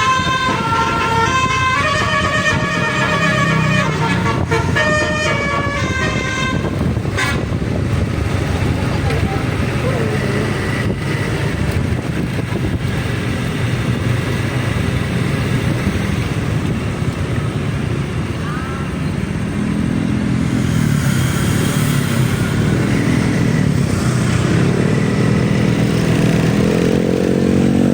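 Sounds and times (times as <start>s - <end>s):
vehicle engines running: 0.0s - 27.9s
engine accelerating: 19.3s - 27.9s.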